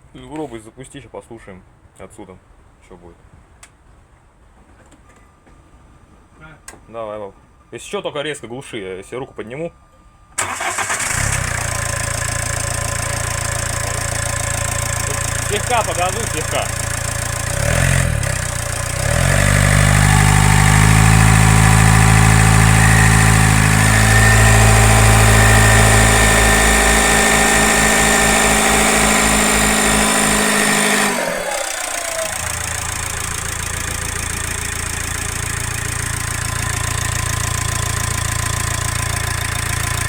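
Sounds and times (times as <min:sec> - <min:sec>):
diesel engine running: 0:10.4 - 0:40.0
engine whistle: 0:13.5 - 0:33.2.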